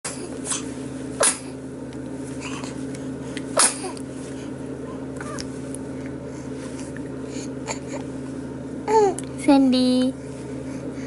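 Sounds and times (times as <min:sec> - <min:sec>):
child sneezing: 0:00.5 - 0:01.6, 0:03.6 - 0:04.0.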